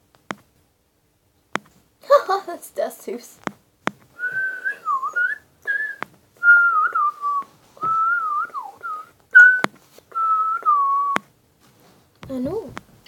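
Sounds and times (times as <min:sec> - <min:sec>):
person whistling bird-like phrases: 0:04.2 - 0:11.2.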